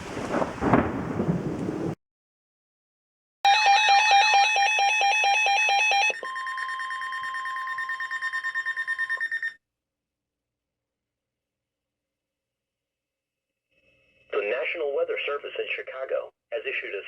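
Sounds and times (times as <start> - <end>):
electronic alarm beeping: 3.5 - 9.6.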